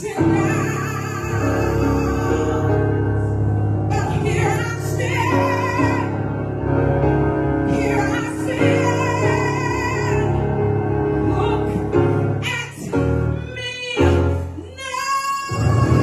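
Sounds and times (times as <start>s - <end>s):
woman singing a slow ballad: 0.0s - 3.2s, 3.9s - 6.2s, 7.7s - 10.4s.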